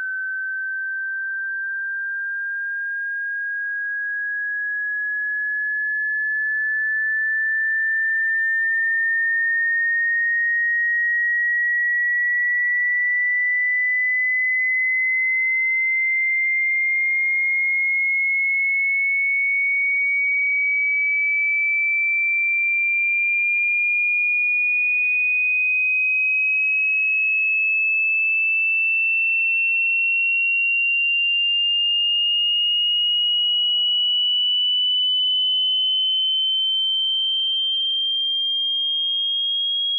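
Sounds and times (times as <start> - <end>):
sine tone gliding upward: 0.0 - 3.2.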